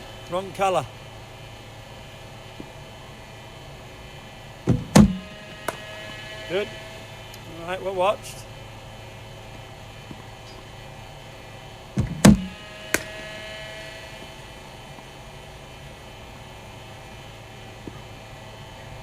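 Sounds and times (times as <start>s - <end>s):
bowling machine humming: 0.0s - 19.0s
thump of ball fired: 4.7s - 5.8s, 12.0s - 13.1s
bat cracking ball: 4.7s - 6.2s, 12.0s - 13.5s.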